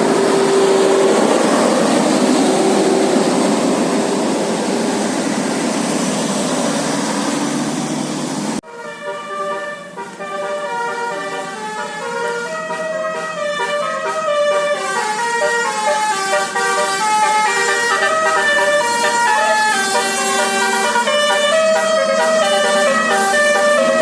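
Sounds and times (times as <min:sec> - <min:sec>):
musical air horn melody: 0:08.6 - 0:24.0.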